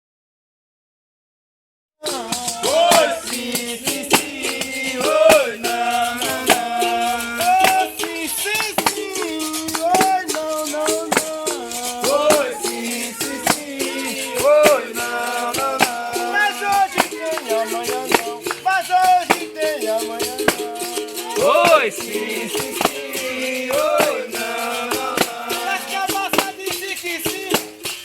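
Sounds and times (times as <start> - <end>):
berimbau playing: 2.0 - 28.0
shaker rattle: 2.0 - 28.0
sharp percussive strokes: 2.0 - 28.0.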